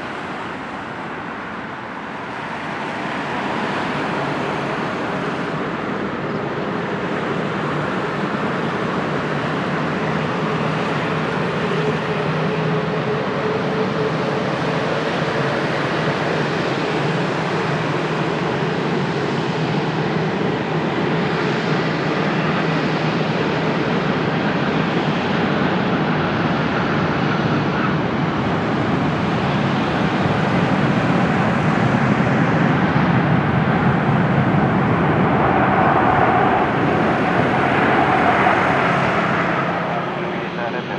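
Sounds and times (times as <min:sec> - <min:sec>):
jet engine rushing: 0:29.7 - 0:40.9.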